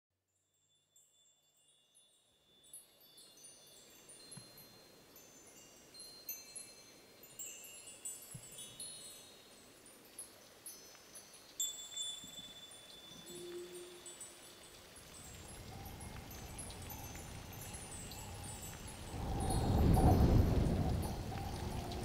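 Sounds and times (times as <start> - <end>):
wind chimes tinkling: 0.3 - 22.0
rush of moving air: 15.7 - 22.0.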